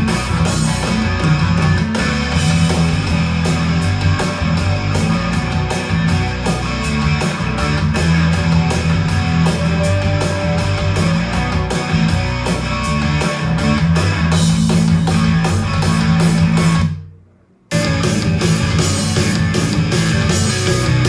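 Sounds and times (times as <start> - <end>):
heavy rock music: 0.0 - 17.0, 17.7 - 21.0.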